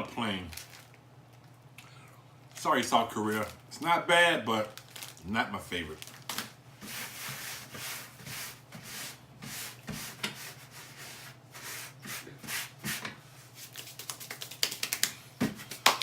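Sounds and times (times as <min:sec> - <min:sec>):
snack wrapper rustling: 0:00.4 - 0:01.6, 0:04.6 - 0:05.2, 0:05.9 - 0:06.5.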